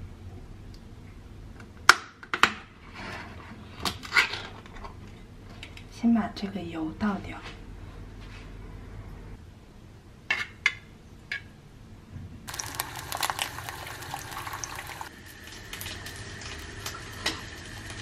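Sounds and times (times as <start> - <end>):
liquid pouring: 12.5 - 18.0.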